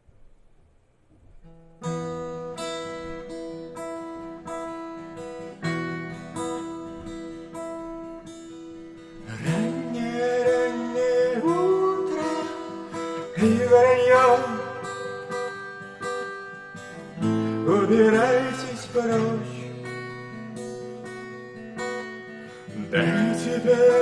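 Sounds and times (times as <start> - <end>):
acoustic guitar chords: 0.0 - 24.0
person singing: 9.2 - 16.4, 17.2 - 19.9, 22.7 - 24.0.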